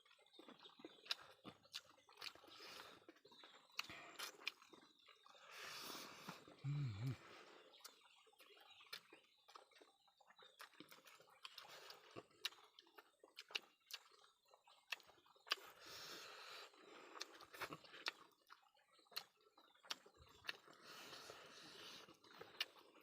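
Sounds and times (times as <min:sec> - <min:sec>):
person chewing food: 0:00.0 - 0:23.0
mouth clicks and smacks: 0:10.6 - 0:15.8, 0:17.2 - 0:20.8.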